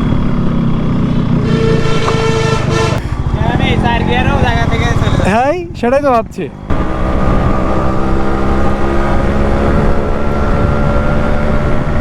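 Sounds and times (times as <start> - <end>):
two-stroke motorcycle engine running: 0.0 - 12.0.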